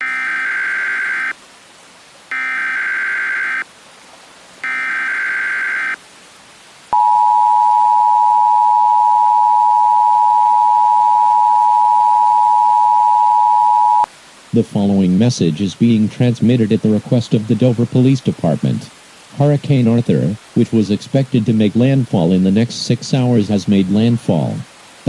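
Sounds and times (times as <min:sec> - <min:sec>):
steady two-tone attention signal: 0:00.0 - 0:01.3, 0:02.3 - 0:03.6, 0:04.6 - 0:06.0, 0:07.0 - 0:14.1
buzzy digital data tones: 0:00.0 - 0:01.4, 0:02.3 - 0:03.6, 0:04.6 - 0:06.0.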